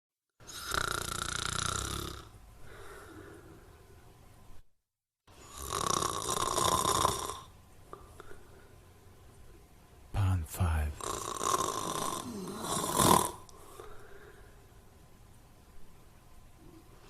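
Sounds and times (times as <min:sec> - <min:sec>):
person snoring: 0:00.5 - 0:02.3, 0:05.4 - 0:07.5, 0:10.6 - 0:13.4
soft breath: 0:02.6 - 0:04.0, 0:13.6 - 0:14.8.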